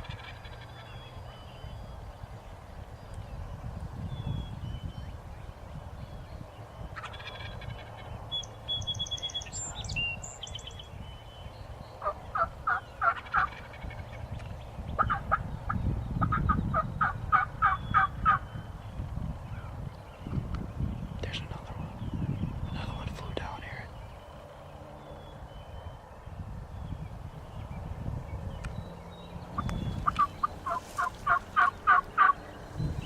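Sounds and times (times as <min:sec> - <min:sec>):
high songbird chirps: 0:00.0 - 0:33.0
wild turkey calling: 0:06.9 - 0:08.1, 0:12.0 - 0:14.2, 0:15.0 - 0:15.4, 0:16.2 - 0:18.5, 0:29.5 - 0:32.5.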